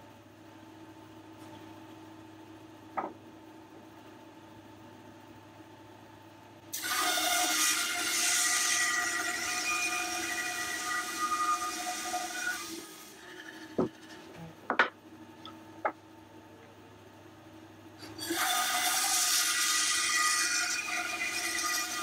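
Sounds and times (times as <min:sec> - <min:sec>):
sharp knocks: 0:03.0 - 0:03.2
bandsaw cutting wood: 0:06.8 - 0:14.1, 0:18.2 - 0:22.0.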